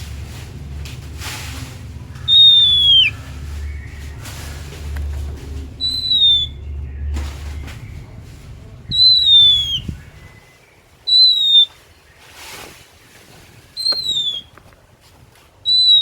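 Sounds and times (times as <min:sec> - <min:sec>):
low hum: 0:00.0 - 0:10.9
bird whistling notes: 0:02.1 - 0:11.9, 0:13.8 - 0:14.5, 0:15.6 - 0:16.0.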